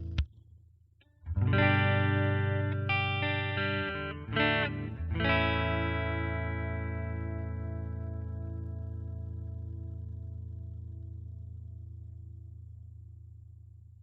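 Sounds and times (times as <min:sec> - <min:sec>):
electric guitar chords: 0:01.3 - 0:12.4.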